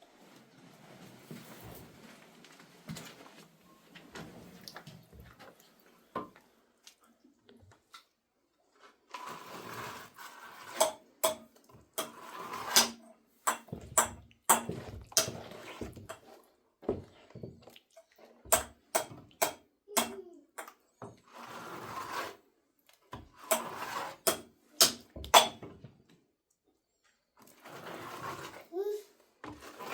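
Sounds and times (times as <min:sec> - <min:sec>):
scraping with sharp knocks: 0:08.7 - 0:17.6, 0:18.3 - 0:22.4, 0:23.0 - 0:25.8, 0:27.4 - 0:29.9.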